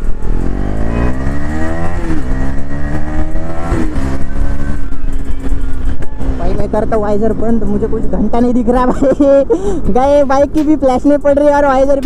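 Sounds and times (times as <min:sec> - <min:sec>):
motorcycle engine accelerating: 0:00.0 - 0:08.8.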